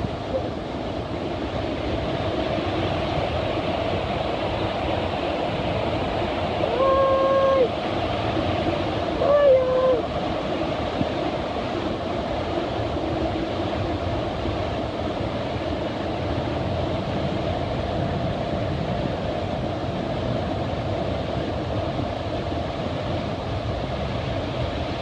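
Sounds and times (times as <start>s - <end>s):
waterfall rushing: 5.8s - 7.9s, 8.8s - 10.3s.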